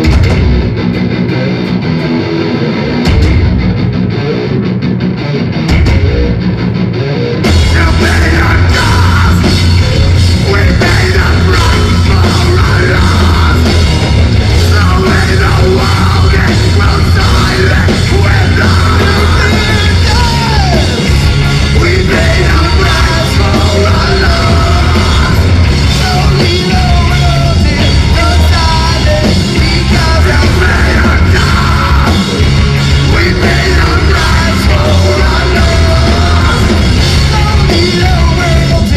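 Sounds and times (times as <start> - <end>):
distorted electric guitar: 0.0 - 38.9
heavy metal band playing: 0.0 - 38.9
person yelling vocals: 14.6 - 21.0.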